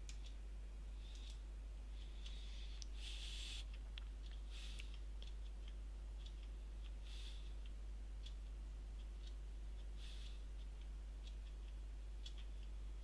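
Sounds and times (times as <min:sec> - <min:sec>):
low electrical hum: 0:00.0 - 0:13.0
computer mouse clicks: 0:01.0 - 0:01.4
scroll wheel ticking: 0:01.0 - 0:01.4, 0:02.0 - 0:13.0.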